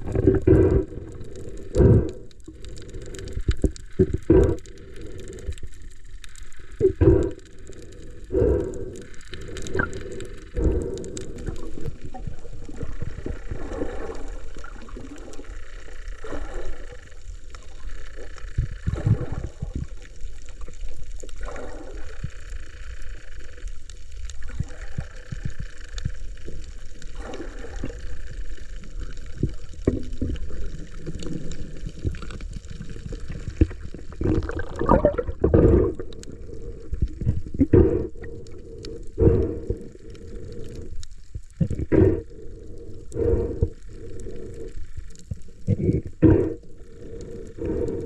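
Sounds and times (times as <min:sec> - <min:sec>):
muffled water sloshing and gurgling: 0:00.0 - 0:48.0.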